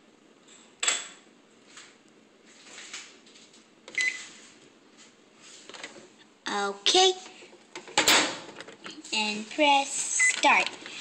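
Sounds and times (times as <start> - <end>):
microwave beep: 3.9 - 4.3, 10.2 - 10.5.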